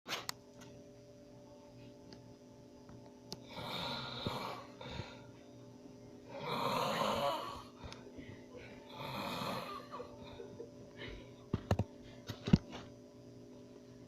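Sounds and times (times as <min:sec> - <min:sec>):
man snoring: 0:03.4 - 0:05.2, 0:06.3 - 0:07.8, 0:08.9 - 0:09.9.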